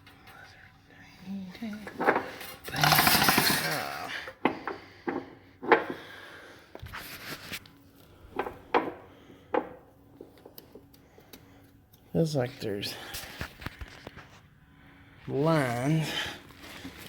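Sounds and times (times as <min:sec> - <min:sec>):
packaging rustle: 0:16.3 - 0:17.0.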